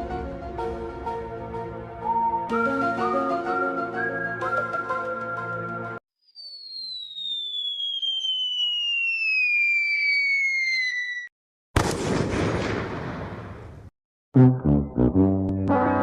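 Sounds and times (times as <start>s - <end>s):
descending whistle: 2.0s - 11.3s
explosion: 11.8s - 13.9s.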